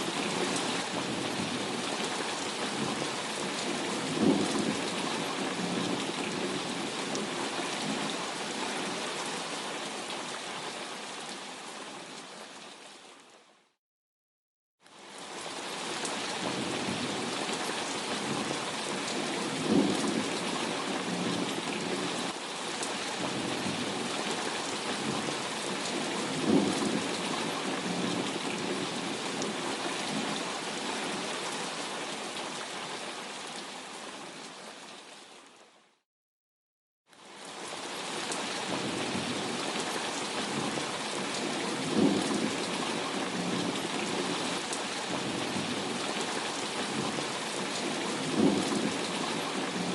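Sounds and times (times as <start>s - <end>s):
heavy rain: 0.0s - 13.8s, 14.8s - 36.0s, 37.1s - 49.9s
thunder rumbles: 2.6s - 8.1s, 18.2s - 22.2s, 24.9s - 30.4s, 41.4s - 44.4s, 46.8s - 49.9s.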